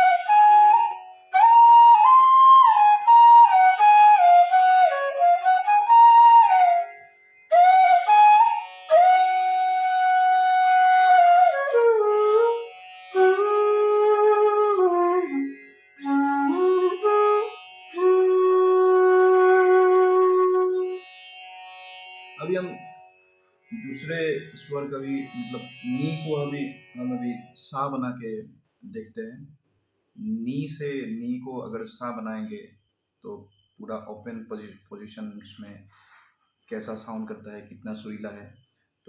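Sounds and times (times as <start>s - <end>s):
bamboo flute melody: 0.0s - 23.1s, 23.7s - 27.7s
tanpura drone: 0.0s - 27.8s
flute player breaths: 35.8s - 36.6s.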